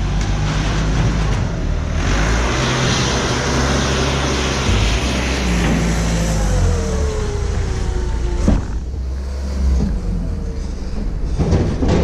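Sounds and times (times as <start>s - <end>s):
vehicle engine running: 0.0s - 11.6s.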